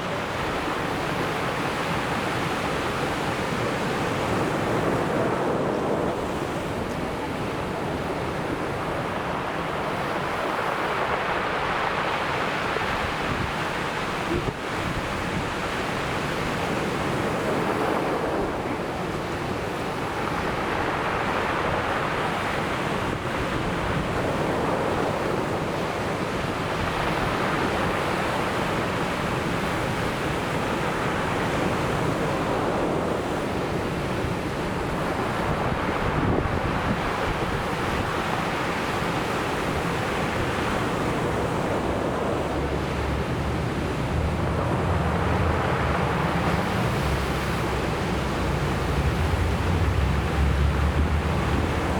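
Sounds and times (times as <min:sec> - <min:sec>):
ocean surf washing ashore: 0:00.0 - 0:51.9
wind on microphone: 0:00.0 - 0:51.9.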